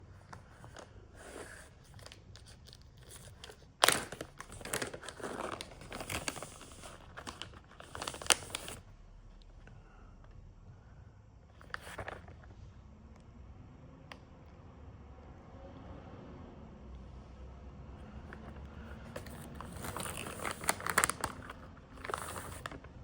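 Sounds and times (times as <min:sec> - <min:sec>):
snack packet rustling and crackling: 0:00.3 - 0:08.8, 0:11.6 - 0:12.4, 0:18.3 - 0:23.0.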